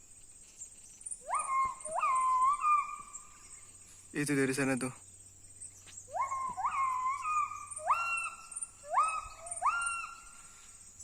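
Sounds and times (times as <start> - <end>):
gibbon whooping calls: 1.2 - 3.1, 6.1 - 10.3.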